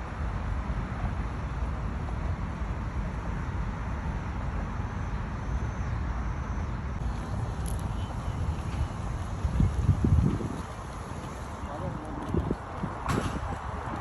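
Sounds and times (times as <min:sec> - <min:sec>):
boat engine rumble: 0:07.0 - 0:14.0
wind blowing: 0:07.0 - 0:14.0.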